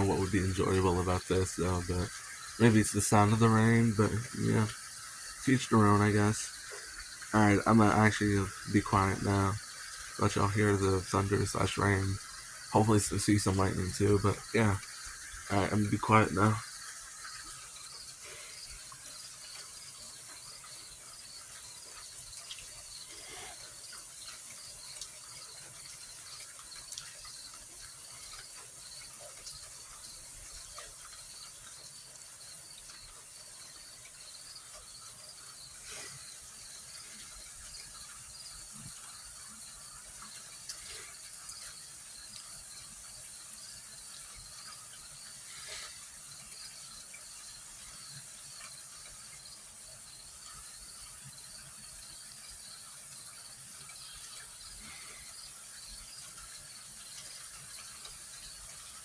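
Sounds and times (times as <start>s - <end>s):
crickets chirping: 0.0s - 59.0s
light rain ticks: 0.0s - 59.0s.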